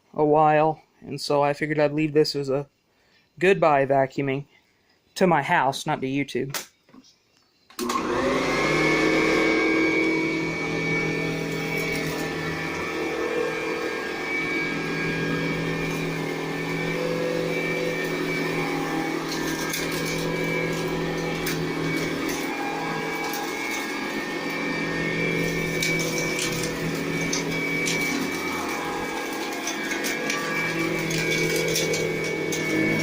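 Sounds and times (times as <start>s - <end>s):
vacuum cleaner motor hum: 7.8s - 33.0s.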